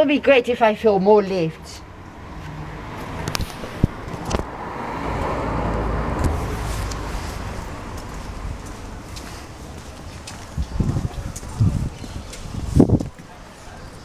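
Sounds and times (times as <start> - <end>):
car passing: 1.6 - 11.3.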